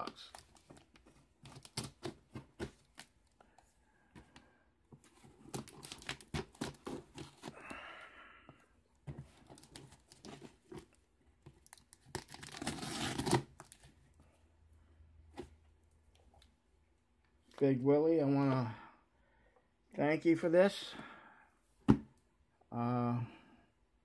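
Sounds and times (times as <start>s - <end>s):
cardboard rustling and crinkling: 0.0s - 7.7s, 9.0s - 14.2s.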